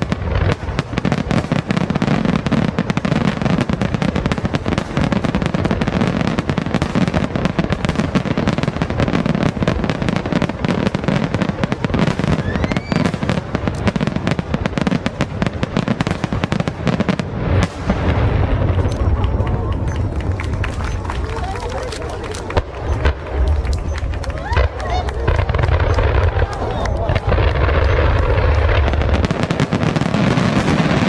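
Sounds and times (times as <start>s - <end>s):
fireworks bangs and crackling: 0.0s - 31.0s.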